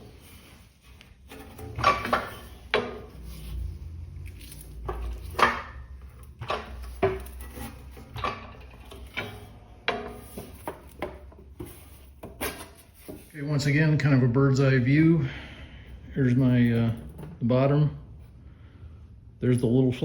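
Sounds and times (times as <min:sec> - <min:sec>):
sheet metal clanking: 0:01.2 - 0:03.6.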